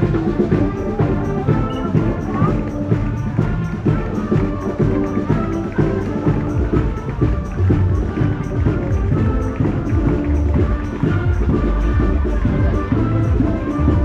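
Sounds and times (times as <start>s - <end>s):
music with steady beat: 0.0s - 14.0s.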